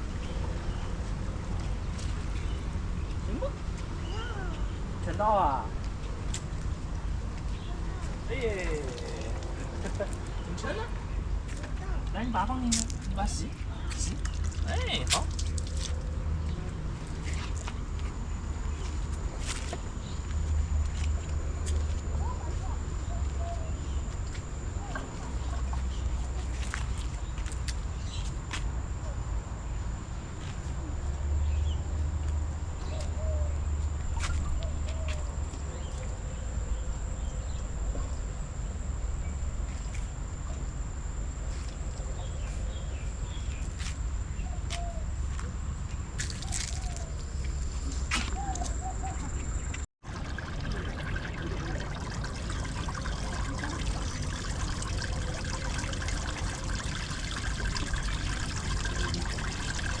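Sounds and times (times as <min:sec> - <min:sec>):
water running and trickling: 0:08.3 - 0:10.6, 0:14.2 - 0:16.1, 0:50.0 - 1:00.0.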